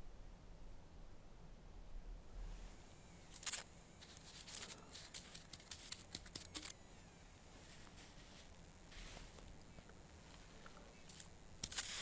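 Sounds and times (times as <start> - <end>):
sharp crackles and rustles: 3.3 - 6.8, 7.6 - 12.0.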